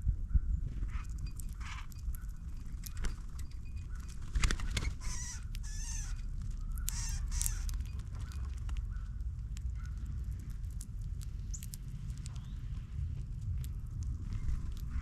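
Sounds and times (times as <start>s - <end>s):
low steady rumble: 0.0s - 15.0s
bird giving harsh raspy calls: 4.8s - 9.2s.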